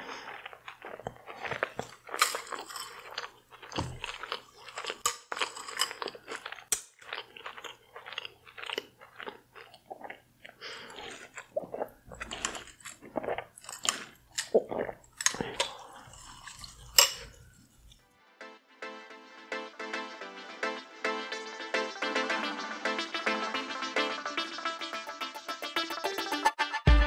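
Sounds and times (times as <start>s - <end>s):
chewing and biting seafood: 0.0s - 18.0s.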